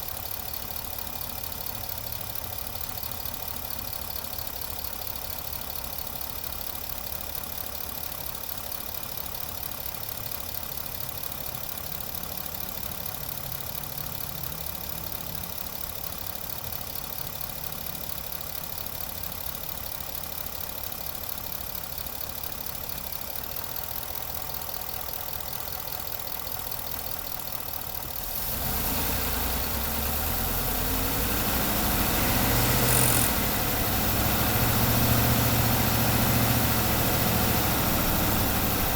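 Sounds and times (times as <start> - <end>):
engine running: 17.7 - 38.9.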